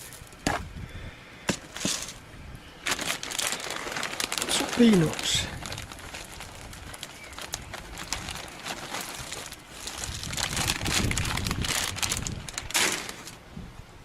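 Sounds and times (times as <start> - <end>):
peanuts rattling out of a bag: 0.0 - 0.4, 2.9 - 13.4
bag rustling: 1.5 - 2.2, 2.8 - 13.4.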